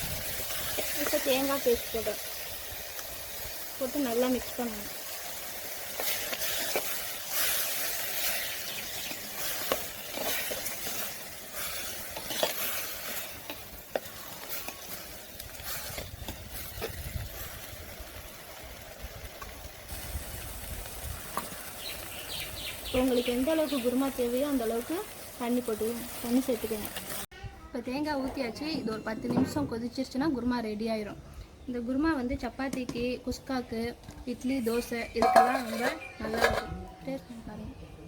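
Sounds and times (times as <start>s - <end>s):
food sizzling in a clay pot: 0.0s - 27.3s, 32.2s - 37.4s.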